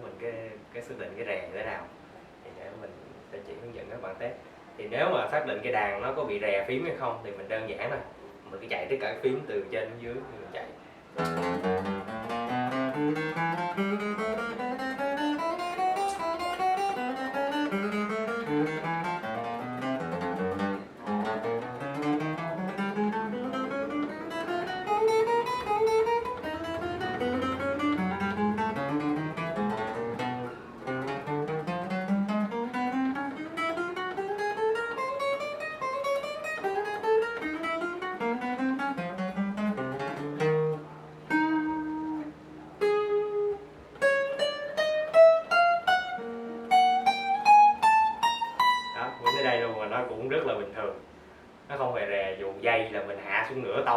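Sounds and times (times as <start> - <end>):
acoustic guitar single-note runs: 11.2 - 51.1.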